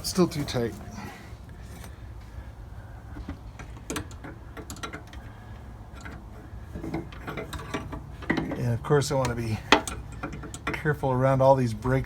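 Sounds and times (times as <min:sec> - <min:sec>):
steady background hum: 0:00.0 - 0:12.0.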